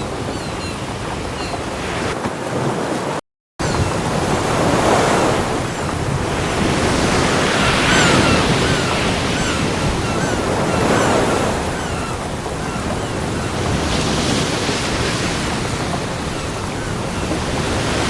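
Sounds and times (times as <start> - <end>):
faint chirping calls: 0.0 - 1.8
ocean waves breaking on beach: 0.0 - 18.0.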